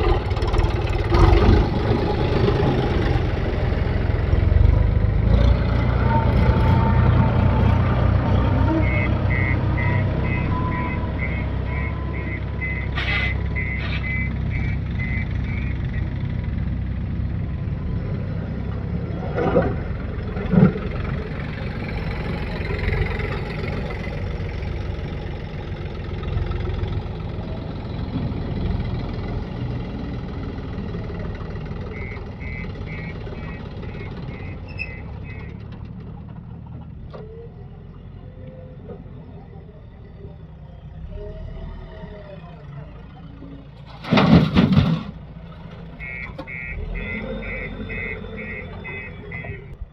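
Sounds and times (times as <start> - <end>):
diesel engine running: 0.0 - 49.9
reversing alarm beeping: 8.7 - 15.8, 31.8 - 35.6, 46.0 - 49.9.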